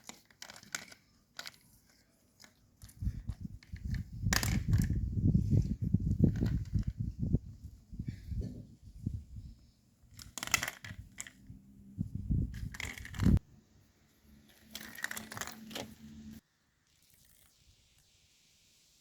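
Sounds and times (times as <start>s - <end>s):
crinkling and scraping: 0.0s - 7.2s, 10.1s - 11.5s, 12.4s - 13.4s, 14.4s - 16.4s.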